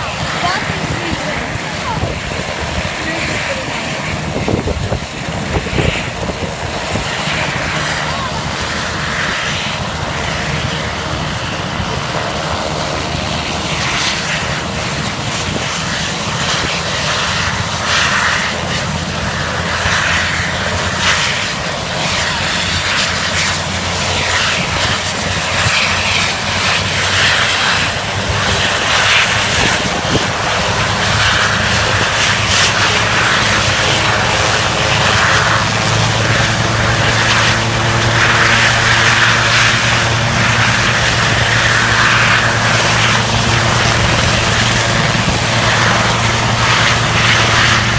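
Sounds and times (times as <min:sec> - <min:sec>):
helicopter rotor and engine: 0:00.0 - 0:47.9.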